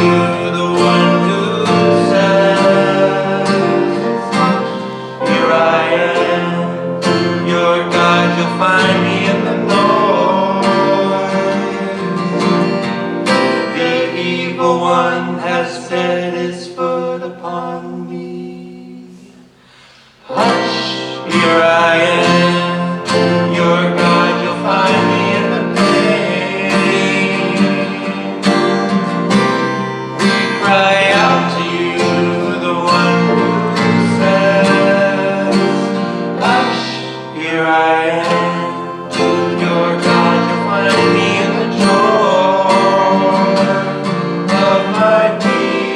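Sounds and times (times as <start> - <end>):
person singing: 0.0 - 45.9
strummed acoustic guitar: 0.0 - 45.9.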